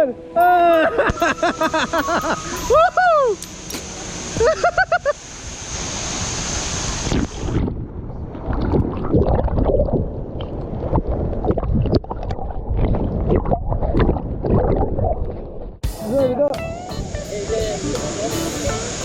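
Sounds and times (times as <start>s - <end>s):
rushing water hissing: 1.1s - 7.6s, 16.8s - 19.0s
wind buffeting microphone: 5.8s - 15.8s.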